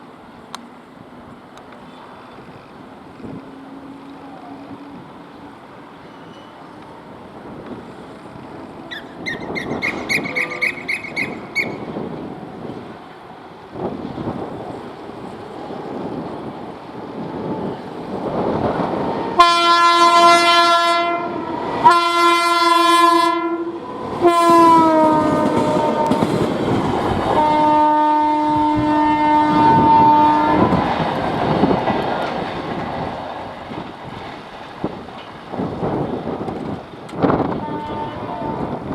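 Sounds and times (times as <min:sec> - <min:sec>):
locomotive air horn blasts: 0:08.6 - 0:12.0, 0:19.4 - 0:26.4, 0:27.2 - 0:30.7, 0:37.5 - 0:38.8
train wheels clattering on rails: 0:24.0 - 0:27.7, 0:29.6 - 0:38.9.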